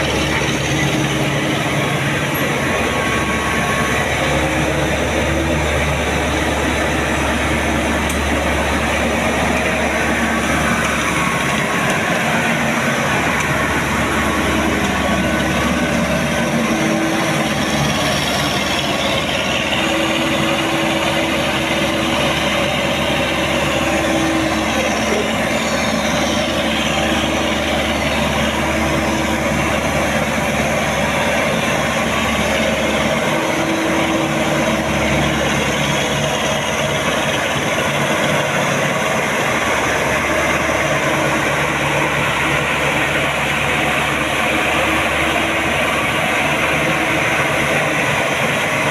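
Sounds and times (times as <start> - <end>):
combine harvester engine running: 0.0 - 48.9.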